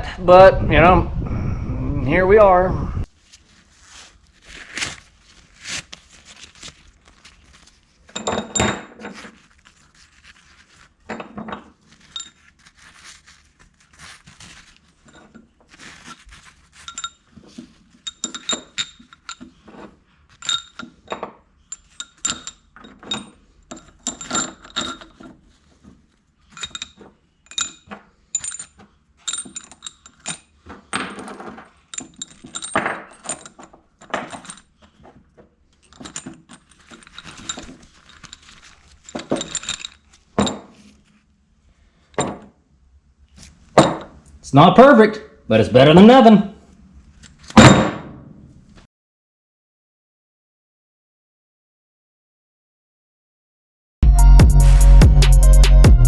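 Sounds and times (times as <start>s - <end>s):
metal tools clinking and clattering: 6.2s - 10.3s, 11.0s - 41.1s.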